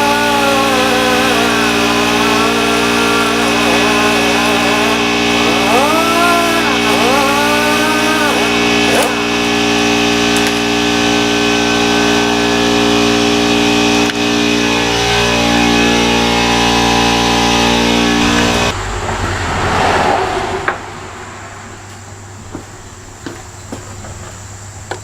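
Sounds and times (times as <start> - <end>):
power tool whining: 0.0 - 19.4.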